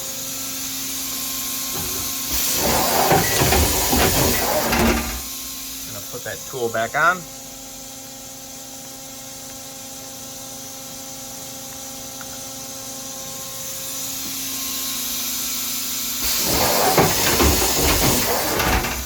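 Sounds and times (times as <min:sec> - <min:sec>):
machine hiss: 0:00.6 - 0:06.5, 0:15.4 - 0:19.0
tool changer rush with knocks: 0:01.7 - 0:05.3, 0:16.2 - 0:19.0
machining center humming: 0:16.2 - 0:19.0.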